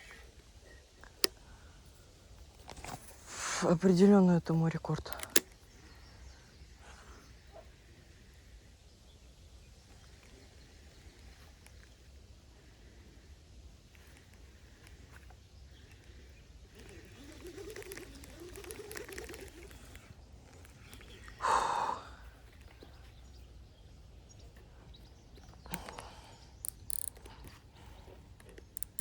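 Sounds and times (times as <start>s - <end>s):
sharp clicks: 5.0s - 5.7s, 16.7s - 21.2s, 25.4s - 27.6s, 28.4s - 29.0s
loud exhale: 21.4s - 22.2s
person breathing heavily: 21.4s - 22.4s.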